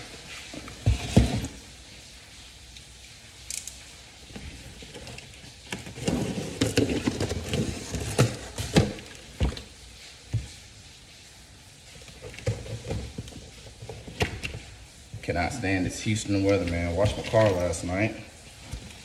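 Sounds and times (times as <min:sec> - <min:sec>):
packaging rustling and crinkling: 0:03.7 - 0:10.8, 0:11.8 - 0:19.0.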